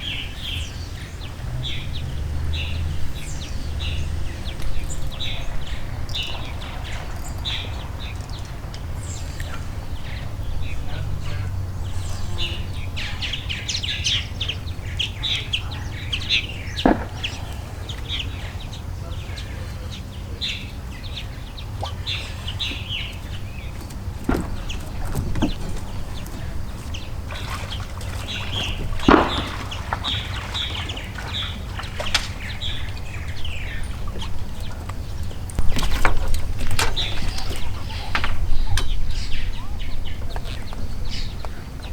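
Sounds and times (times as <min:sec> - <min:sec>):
small birds chirping: 0:00.0 - 0:41.9
sharp knocks: 0:23.2 - 0:30.6.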